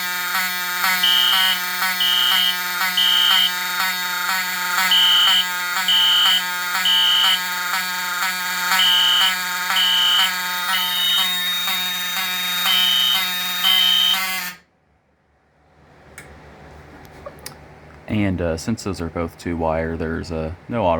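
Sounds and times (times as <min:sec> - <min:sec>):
continuous fire alarm horn: 0:00.0 - 0:14.7
fire alarm horn blasts: 0:00.0 - 0:14.7.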